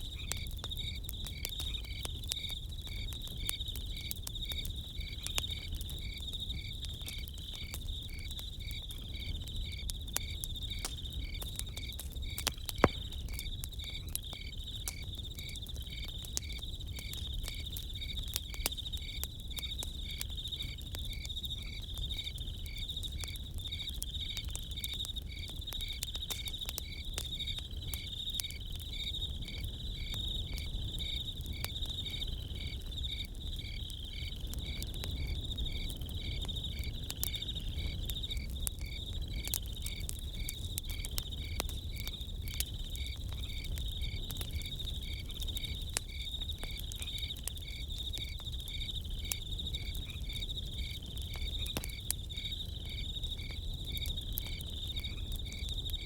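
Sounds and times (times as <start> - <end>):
campfire crackling: 0.0 - 56.0
crickets chirping: 0.0 - 56.0.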